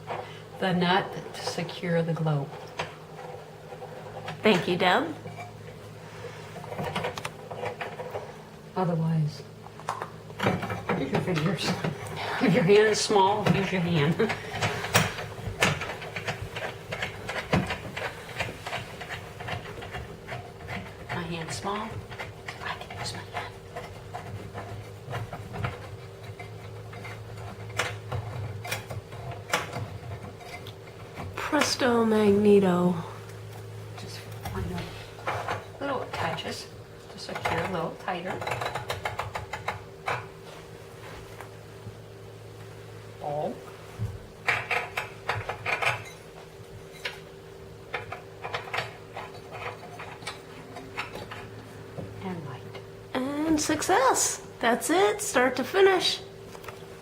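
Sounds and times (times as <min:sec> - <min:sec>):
faint steady hum: 0:00.0 - 0:57.0.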